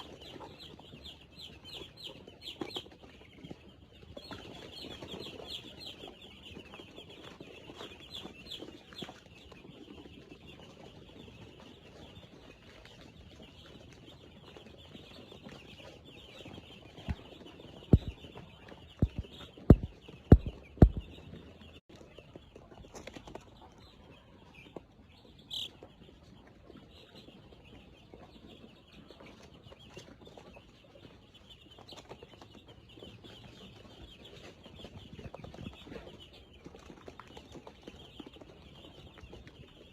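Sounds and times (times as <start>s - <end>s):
chickens chirping and clucking: 0.0s - 39.9s
sharp loud knocks: 17.9s - 18.2s, 19.0s - 21.1s.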